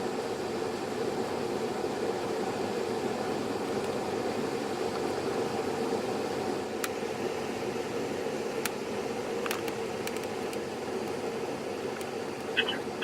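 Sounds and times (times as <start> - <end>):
car cabin noise: 12.5 - 13.0.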